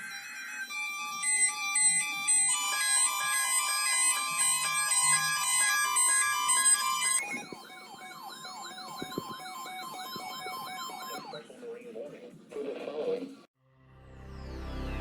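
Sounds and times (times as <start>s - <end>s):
bright synthesized tune: 0.0s - 11.4s
electronic siren: 0.0s - 11.4s.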